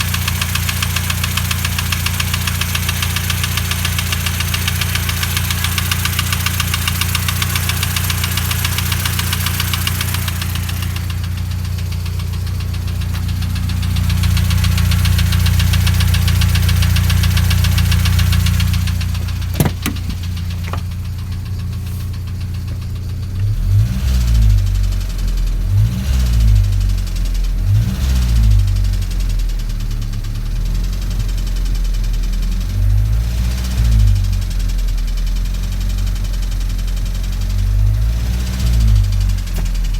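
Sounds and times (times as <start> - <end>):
engine running with metallic knock: 17.9 - 21.4.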